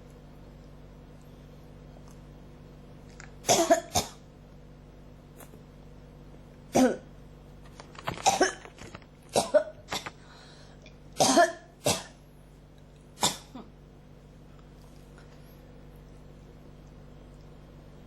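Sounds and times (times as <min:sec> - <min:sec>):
person coughing: 0:03.5 - 0:04.2, 0:06.7 - 0:07.1, 0:08.2 - 0:08.7, 0:09.3 - 0:10.2, 0:11.2 - 0:12.2, 0:13.2 - 0:13.8.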